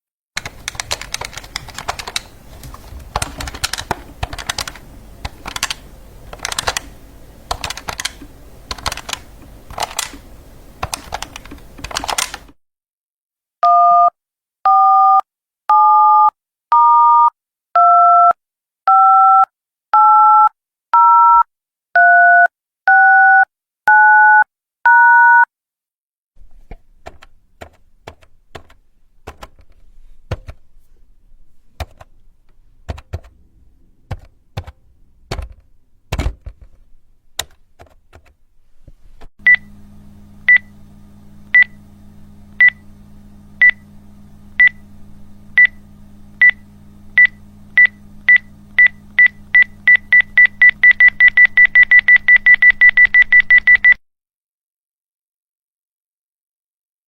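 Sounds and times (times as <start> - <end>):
steady low hum: 0.4 - 12.5, 26.4 - 37.8, 38.4 - 52.7
touch-tone dialing beeps: 14.7 - 25.5, 47.2 - 54.0.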